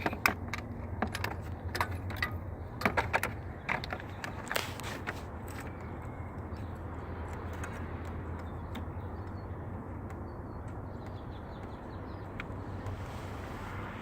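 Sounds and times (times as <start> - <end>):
low mechanical hum: 0.0 - 14.0.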